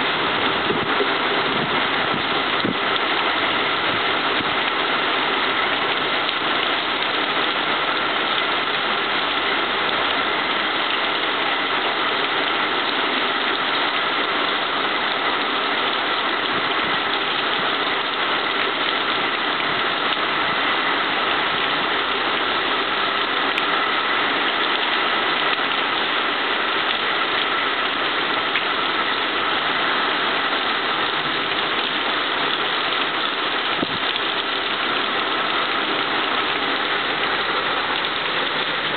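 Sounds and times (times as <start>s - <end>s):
heavy rain pouring: 0.0s - 38.9s.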